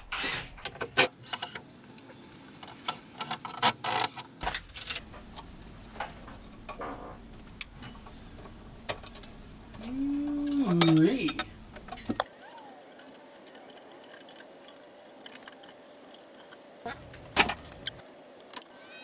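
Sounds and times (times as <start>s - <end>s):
metal tools clinking: 8.9s - 12.2s.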